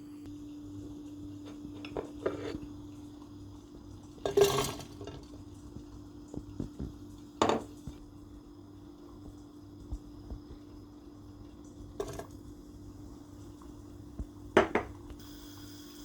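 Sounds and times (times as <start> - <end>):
cookware clattering: 1.8 - 2.6, 4.2 - 5.3, 7.4 - 7.7, 12.0 - 12.3.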